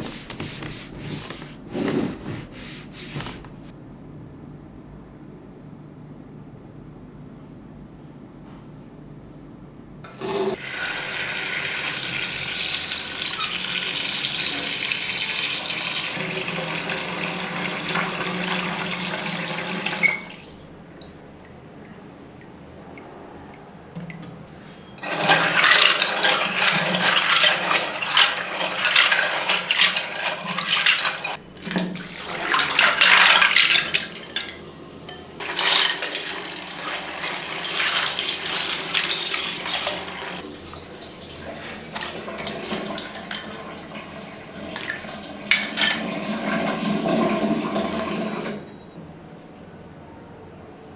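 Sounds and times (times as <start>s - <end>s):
water splashing on keycaps: 0.0s - 3.7s
water running from a tap: 10.1s - 21.0s, 35.4s - 48.6s.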